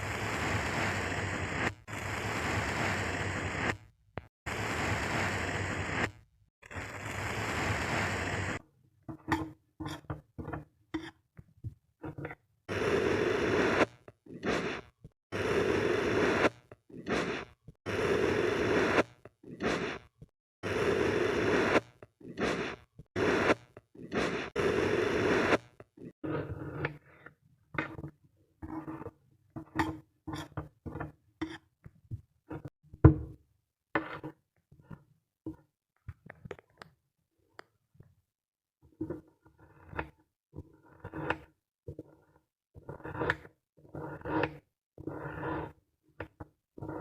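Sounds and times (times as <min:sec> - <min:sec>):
sand being scraped: 0:00.0 - 0:03.8, 0:04.5 - 0:08.6, 0:12.7 - 0:26.2.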